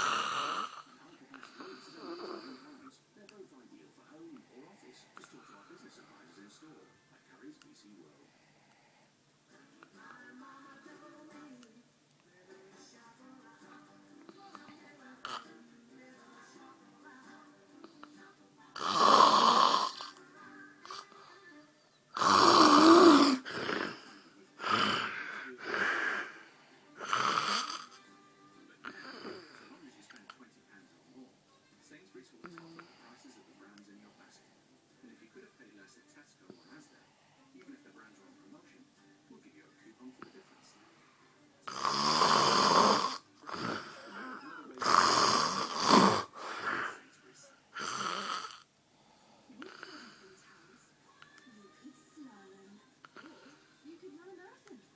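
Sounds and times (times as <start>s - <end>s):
man snoring: 0.0s - 2.8s, 18.8s - 20.2s, 22.2s - 26.4s, 27.0s - 28.0s, 28.8s - 29.7s, 41.7s - 47.0s, 47.7s - 48.6s, 49.6s - 50.3s
quiet breath: 0.7s - 11.6s, 12.3s - 18.9s, 19.9s - 22.2s, 23.2s - 27.1s, 27.7s - 31.6s, 32.4s - 39.2s, 40.0s - 41.6s, 46.2s - 54.2s.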